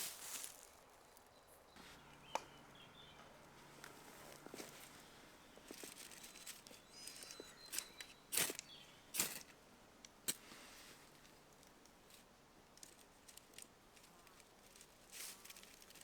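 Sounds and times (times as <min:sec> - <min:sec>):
soft rustling: 0:00.0 - 0:09.5, 0:10.4 - 0:16.0
faint bird chirps: 0:01.3 - 0:09.2.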